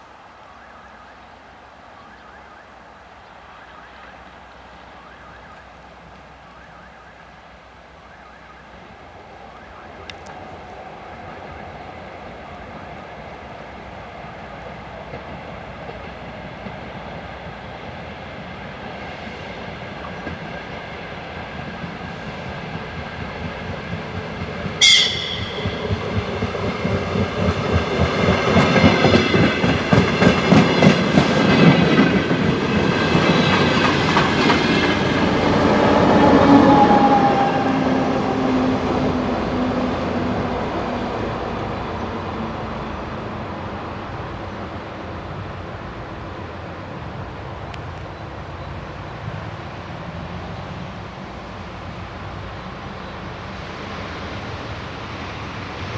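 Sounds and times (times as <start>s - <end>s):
train passing: 0.0s - 55.9s
wheels clacking over rail joints: 22.8s - 36.2s
train horn blast: 24.8s - 26.4s.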